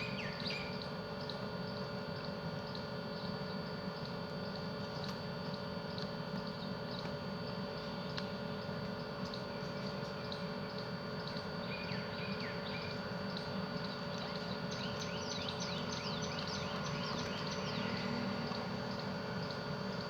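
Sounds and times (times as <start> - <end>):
small birds chirping: 9.6 - 18.6.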